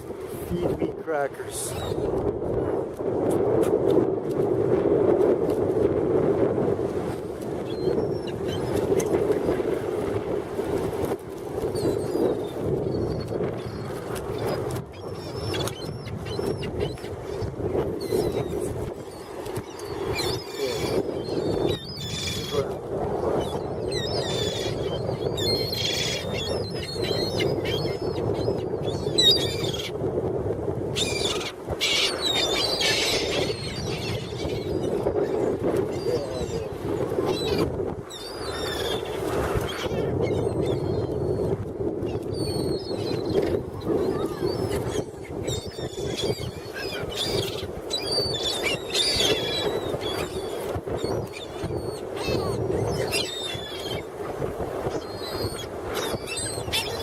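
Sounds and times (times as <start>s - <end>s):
gulls calling: 11.8s - 22.8s, 23.4s - 30.0s, 31.0s - 41.4s, 42.1s - 54.1s, 54.8s - 57.0s.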